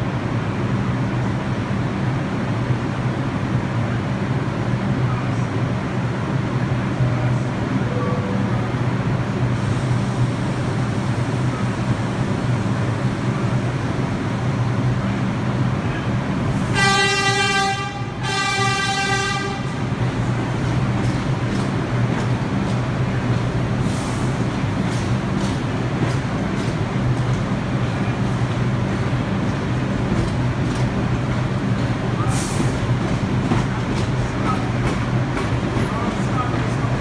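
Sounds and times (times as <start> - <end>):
subway train humming: 0.0 - 37.0
train horn blasts: 16.6 - 20.0.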